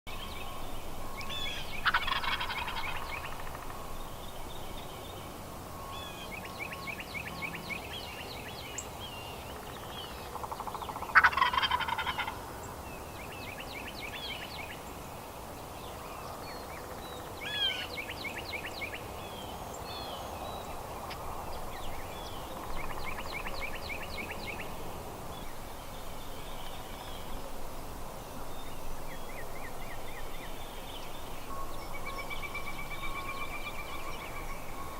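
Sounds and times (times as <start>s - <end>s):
turkey gobbling: 1.5s - 3.8s, 10.9s - 12.4s.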